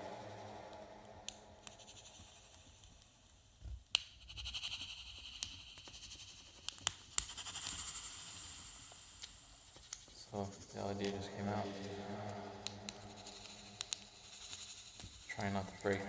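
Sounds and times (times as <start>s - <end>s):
hissy reverb tail: 0.0s - 2.1s, 10.3s - 14.4s.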